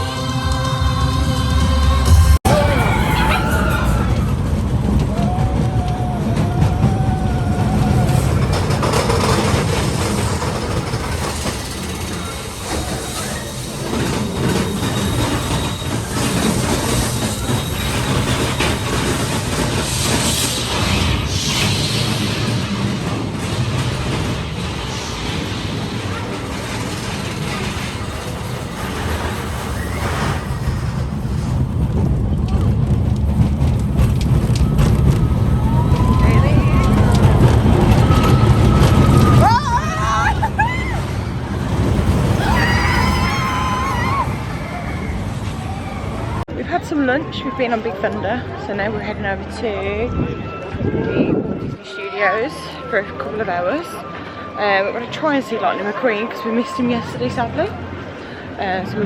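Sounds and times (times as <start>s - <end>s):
roller coaster wheels rumbling: 0.0s - 59.0s
wheel squeal: 2.5s - 46.4s
wind buffeting microphone: 4.0s - 42.6s, 48.4s - 51.9s.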